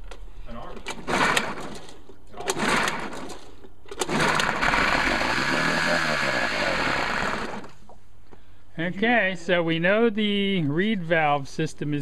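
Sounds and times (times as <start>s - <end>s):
outboard motor starting and running: 1.0s - 1.8s, 2.4s - 7.8s.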